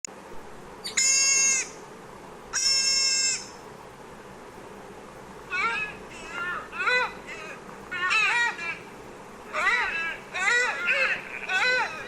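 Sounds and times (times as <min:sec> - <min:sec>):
deer calling: 0:02.6 - 0:03.5, 0:09.5 - 0:12.0.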